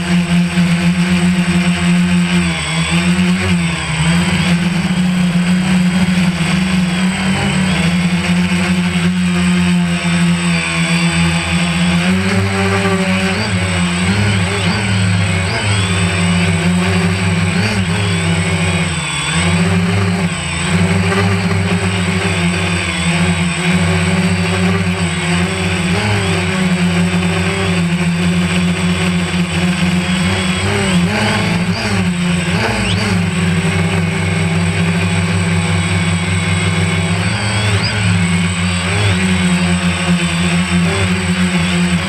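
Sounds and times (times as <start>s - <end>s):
drone propellers buzzing: 0.0s - 42.0s.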